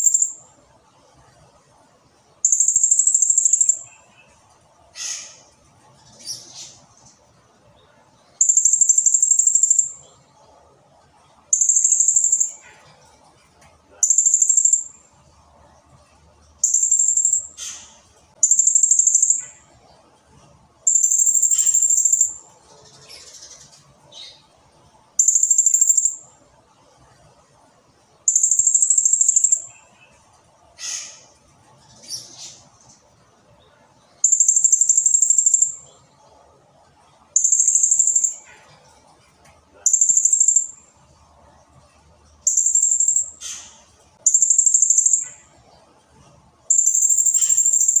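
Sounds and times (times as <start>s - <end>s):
parrot shrill pulsed trills: 20.9s - 22.4s, 46.7s - 48.0s.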